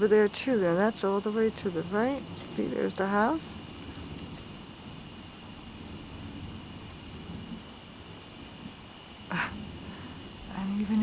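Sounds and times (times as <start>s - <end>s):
crickets trilling: 0.0s - 11.0s
high chirping insects: 0.0s - 11.0s.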